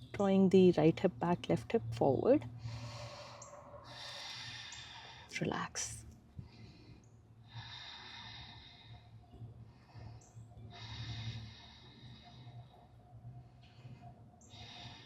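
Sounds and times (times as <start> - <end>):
faint low hum: 0.0 - 15.0
person breathing: 2.6 - 5.4, 6.4 - 13.0.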